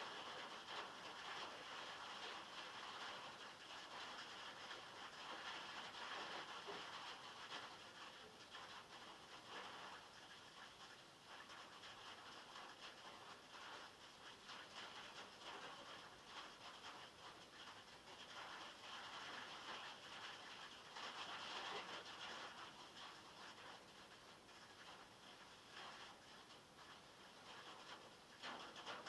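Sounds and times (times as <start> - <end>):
rain on a metal roof: 0.0 - 29.0.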